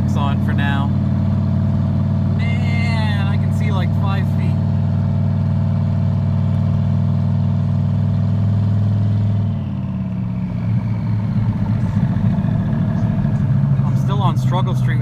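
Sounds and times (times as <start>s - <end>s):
man talking: 0.0s - 1.0s, 2.4s - 4.6s, 11.7s - 15.0s
truck engine running: 0.0s - 15.0s.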